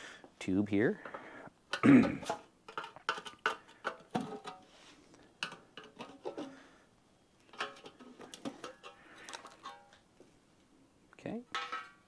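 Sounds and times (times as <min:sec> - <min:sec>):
metal can clinks and knocks: 0:01.7 - 0:04.6, 0:05.4 - 0:06.5, 0:07.5 - 0:10.0, 0:11.5 - 0:12.0.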